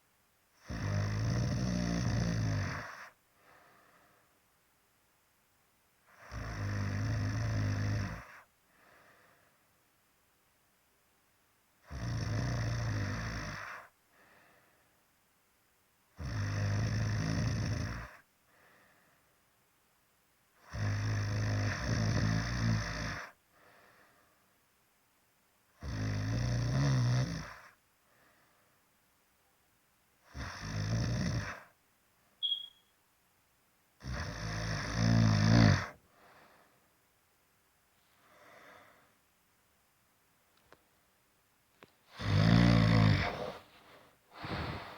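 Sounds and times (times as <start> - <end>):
loud snoring: 0.6 - 3.2, 6.1 - 8.4, 11.8 - 13.9, 16.2 - 18.2, 20.6 - 23.4, 25.8 - 27.8, 30.3 - 31.7, 34.0 - 36.0, 42.1 - 43.7, 44.3 - 44.9
faint breath out: 3.3 - 4.4, 8.7 - 9.7, 14.1 - 15.0, 18.5 - 19.4, 23.5 - 24.4, 28.0 - 28.8, 36.1 - 36.9, 38.0 - 39.2, 42.1 - 44.9
brief high squeak: 32.4 - 32.9.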